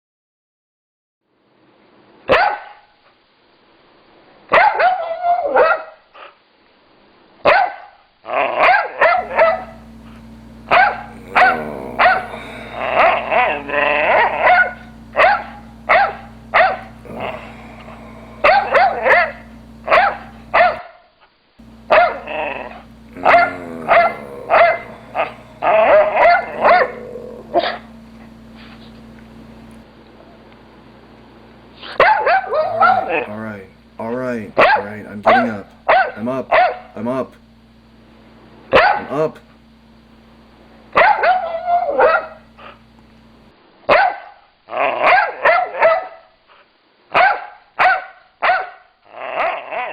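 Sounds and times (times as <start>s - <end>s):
dog barking: 2.3s - 2.9s, 4.5s - 6.4s, 7.4s - 8.0s, 8.6s - 9.8s, 10.7s - 17.0s, 18.4s - 21.0s, 21.9s - 27.9s, 31.9s - 33.3s, 34.6s - 36.9s, 38.7s - 39.1s, 41.0s - 42.8s, 43.9s - 46.3s, 47.1s - 48.9s
low steady hum: 9.2s - 20.8s, 21.6s - 38.7s.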